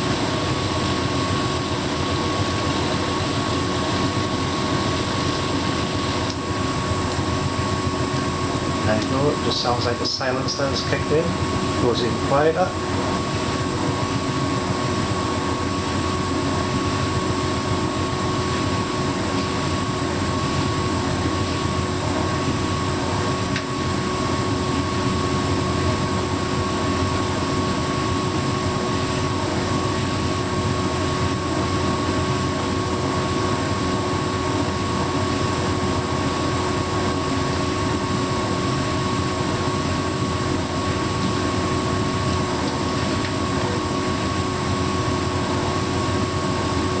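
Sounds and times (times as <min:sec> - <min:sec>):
tumble dryer whirring hum: 0:00.0 - 0:47.0.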